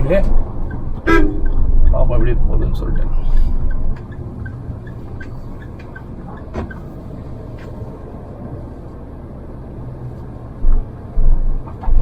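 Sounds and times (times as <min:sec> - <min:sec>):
engine and road rumble: 0:00.0 - 0:12.0
sharp knock: 0:01.1 - 0:01.7.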